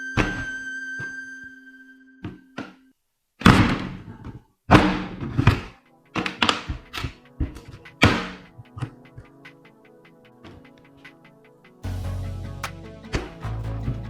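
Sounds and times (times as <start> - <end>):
background music: 5.3 - 14.0.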